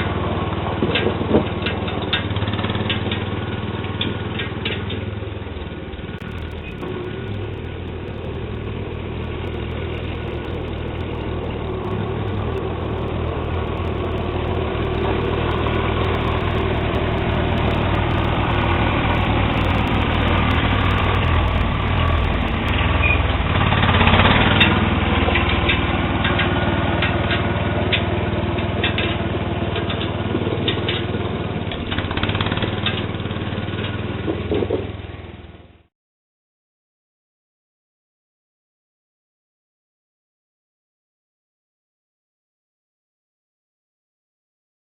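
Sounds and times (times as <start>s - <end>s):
garden tractor engine running: 0.0s - 35.2s
sharp clicks: 6.2s - 22.7s.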